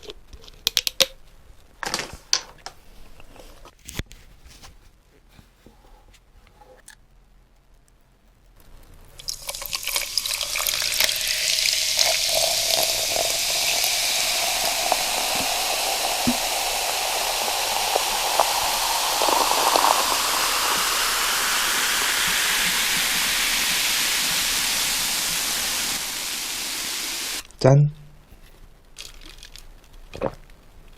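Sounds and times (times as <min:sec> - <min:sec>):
drink pouring into a glass: 0:09.2 - 0:27.4.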